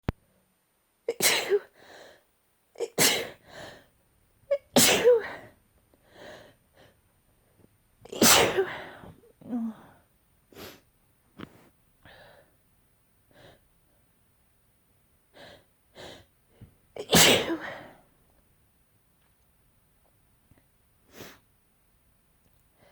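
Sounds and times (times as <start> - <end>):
person sneezing: 1.1 - 1.7, 4.6 - 5.4, 8.1 - 9.6, 17.0 - 18.0
person breathing: 6.0 - 7.0, 11.5 - 12.6.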